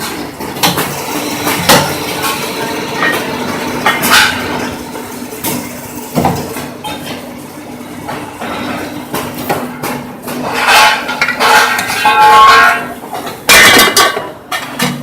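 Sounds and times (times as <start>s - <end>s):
loud metallic clatter: 0.0s - 7.0s
machine humming: 0.0s - 10.2s.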